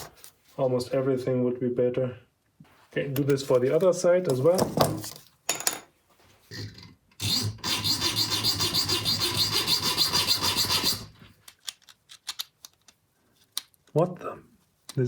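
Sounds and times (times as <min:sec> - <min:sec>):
saw scraping steel: 0:07.2 - 0:11.1.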